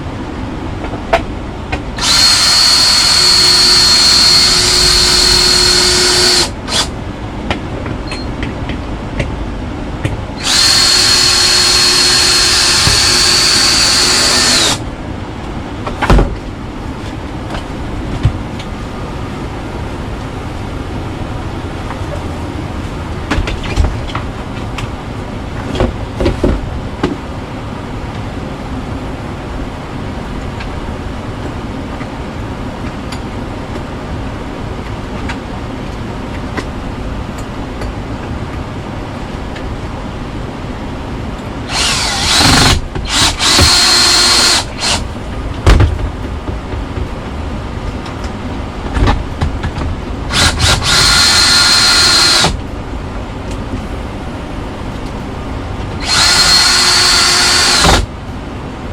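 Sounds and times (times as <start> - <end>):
steady background noise: 0.0 - 58.9
power drill whining: 2.0 - 6.9, 10.4 - 14.8, 41.7 - 45.0, 50.3 - 52.6, 56.0 - 58.1.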